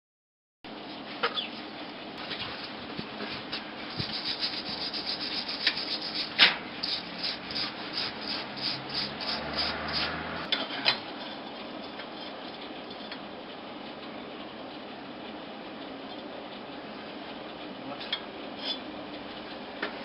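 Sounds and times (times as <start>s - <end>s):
rhythmic rubbing strokes: 3.9s - 10.5s.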